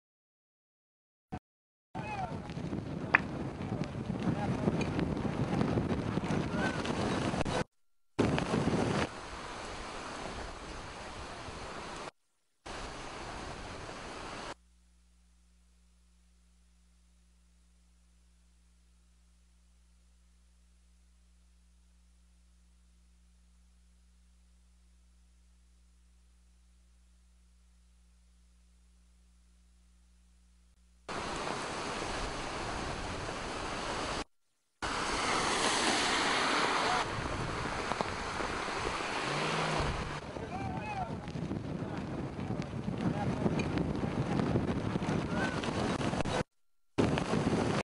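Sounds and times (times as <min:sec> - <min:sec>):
wind on microphone: 0:02.0 - 0:12.1, 0:34.8 - 0:46.4, 0:47.0 - 0:47.8
crashing surf: 0:08.2 - 0:12.1, 0:12.7 - 0:14.6, 0:31.1 - 0:34.2, 0:34.8 - 0:46.4
faint low hum: 0:14.6 - 0:31.1.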